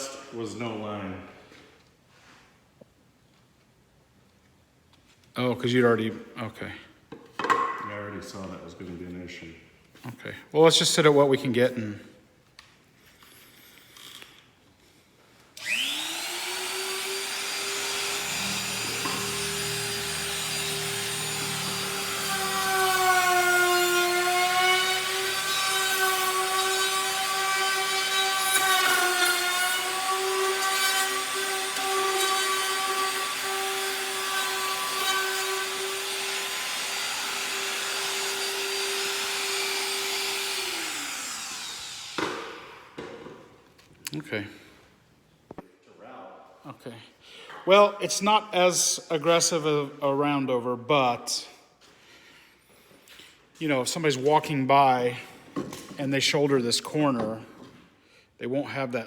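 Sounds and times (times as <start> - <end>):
trim router whining: 15.6 - 42.5.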